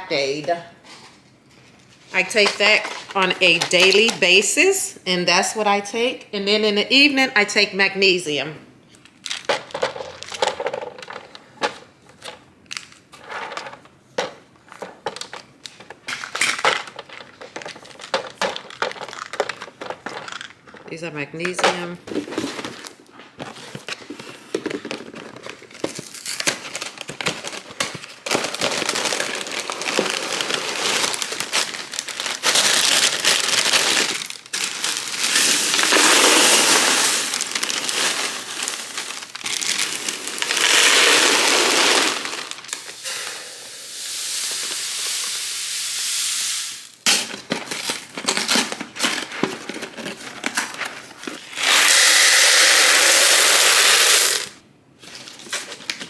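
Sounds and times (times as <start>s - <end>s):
plastic packaging crinkling: 9.0s - 13.1s, 14.7s - 20.8s, 22.0s - 56.0s
containers clicking and clattering: 13.4s - 22.9s.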